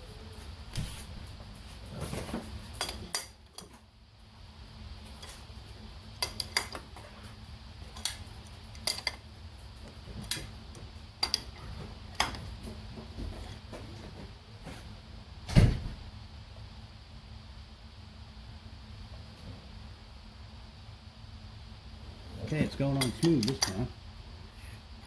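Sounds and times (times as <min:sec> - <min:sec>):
heavier thud: 0:15.5 - 0:16.2.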